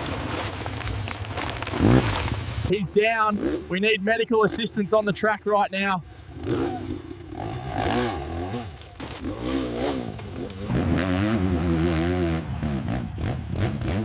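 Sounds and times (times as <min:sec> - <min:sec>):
motorcycle engine revving: 0:03.0 - 0:04.1, 0:06.2 - 0:14.0.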